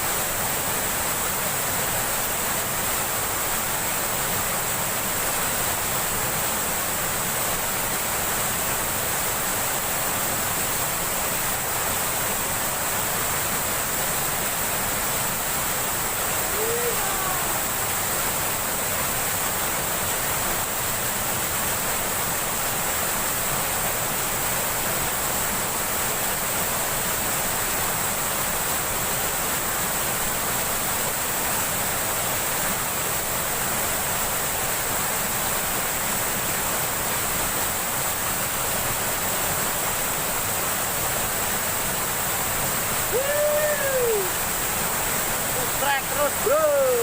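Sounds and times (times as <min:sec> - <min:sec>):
river water rushing: 0:00.0 - 0:47.0.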